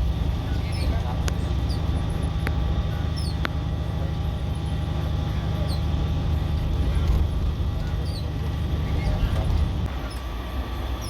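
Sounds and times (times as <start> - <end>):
moving bus rumble: 0.0 - 11.0
faint high squeaks: 0.5 - 2.2, 3.1 - 3.4, 7.8 - 10.3.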